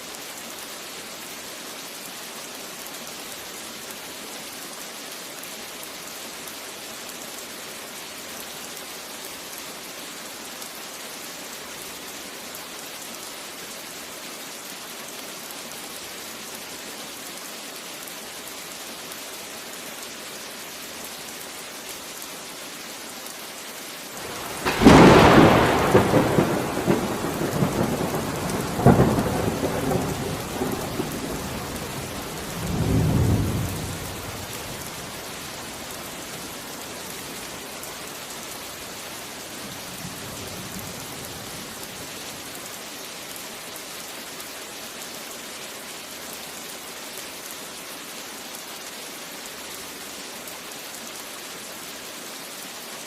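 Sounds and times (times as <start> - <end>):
steady rain falling: 0.0 - 53.0
thunderclap: 24.2 - 30.6
rolling thunder rumble: 24.2 - 34.9.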